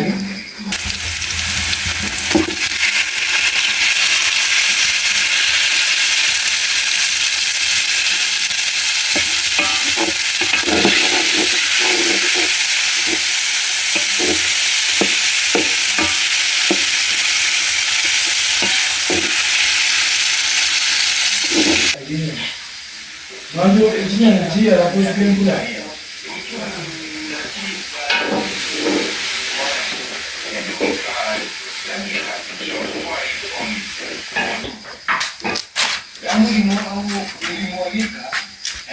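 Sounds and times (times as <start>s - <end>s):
food sizzling in a pan: 0.0s - 37.8s
utensil knocking while stirring: 0.8s - 2.8s, 9.1s - 17.0s.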